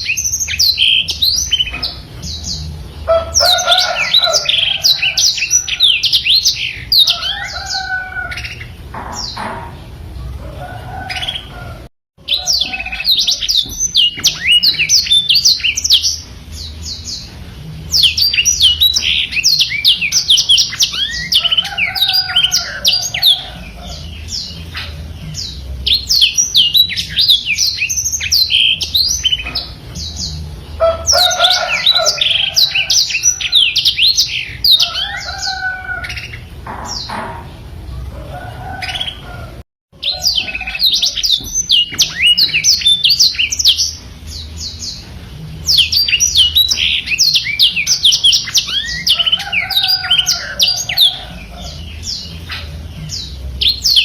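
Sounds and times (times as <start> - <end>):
canary twittering song: 0.0 - 54.0.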